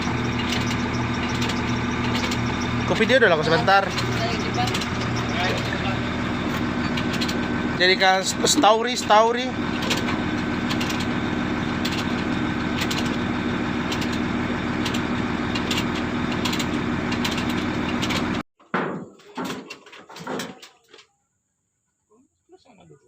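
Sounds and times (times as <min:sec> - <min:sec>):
excavator diesel engine idling: 0:00.0 - 0:18.4.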